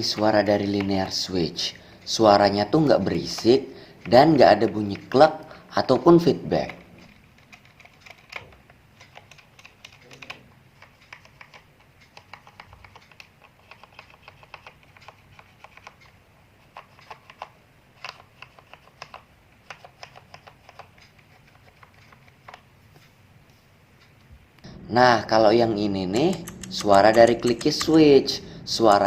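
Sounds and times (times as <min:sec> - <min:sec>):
typing on mechanical keyboard: 0:06.4 - 0:22.6, 0:26.2 - 0:28.0.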